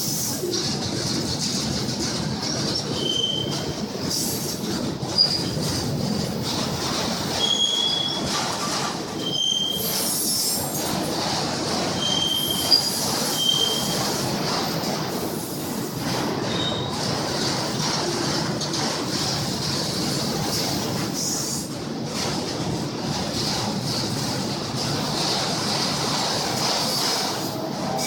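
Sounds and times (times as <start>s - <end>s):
train rolling by: 0.0s - 28.0s
high-pitched wheel squeals: 12.0s - 14.0s.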